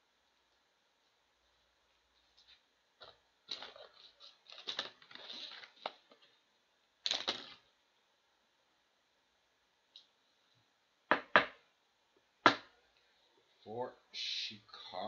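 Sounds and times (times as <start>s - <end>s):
trading cards being shuffled: 2.4s - 6.3s.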